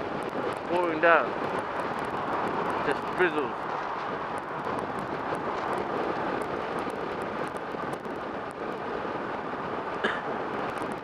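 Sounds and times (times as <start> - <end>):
road noise: 0.0 - 11.0
wind rush: 0.0 - 11.0.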